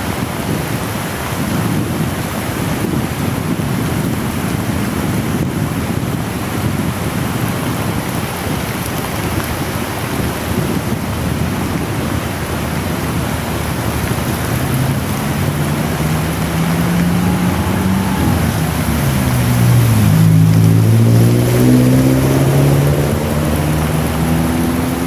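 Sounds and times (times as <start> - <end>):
heavy rain hissing: 0.0 - 25.0
rush of riding through rain: 0.0 - 25.0
motor engine hum: 10.6 - 25.0.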